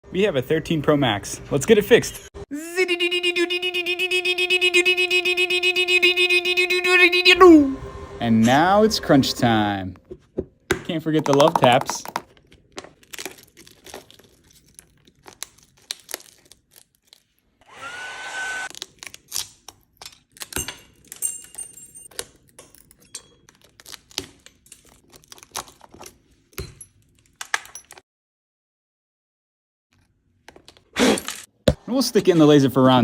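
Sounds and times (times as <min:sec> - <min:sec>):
glass cracking and clicking: 0:11.4 - 0:17.2, 0:18.7 - 0:28.0
small blower whining: 0:17.6 - 0:18.7.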